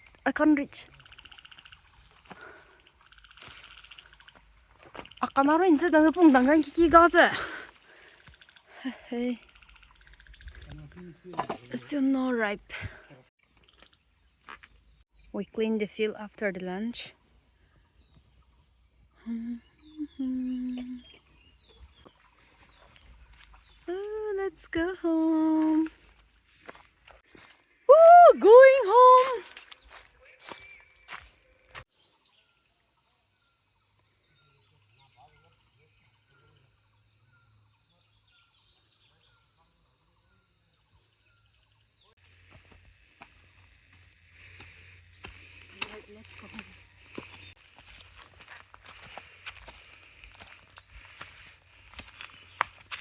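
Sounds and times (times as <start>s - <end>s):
faint insect chirping: 0.0s - 28.9s, 29.5s - 53.0s
person humming: 19.2s - 21.2s.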